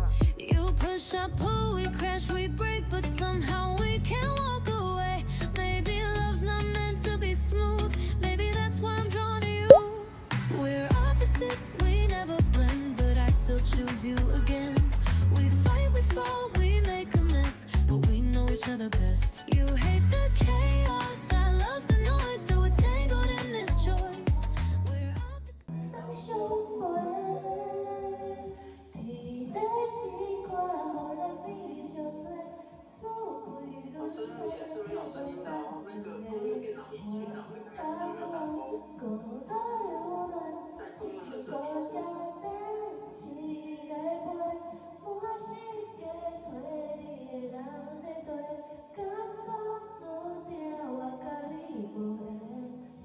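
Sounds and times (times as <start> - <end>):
pop song with woman singing: 0.0 - 53.0.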